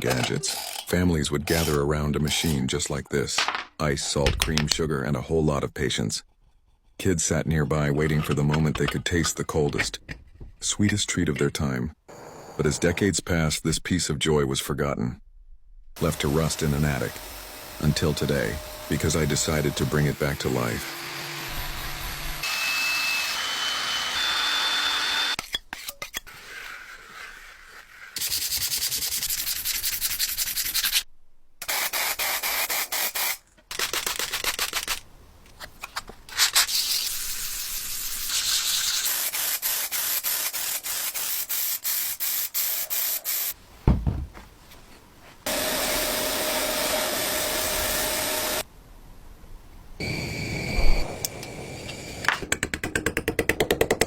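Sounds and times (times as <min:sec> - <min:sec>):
sanding rusted metal: 0:36.6 - 0:43.6.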